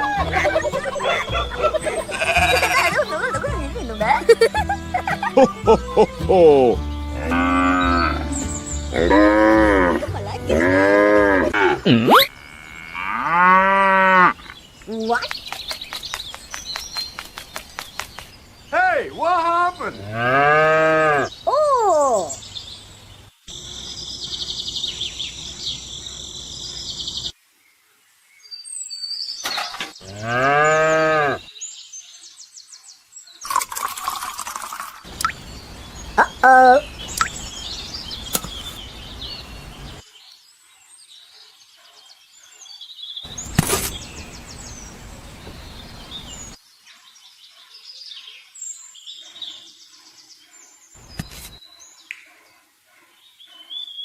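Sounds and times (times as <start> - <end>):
cattle mooing: 2.0 - 3.0, 7.2 - 14.4, 20.0 - 21.3, 30.0 - 31.4
high chirping: 11.8 - 13.2, 35.1 - 40.0.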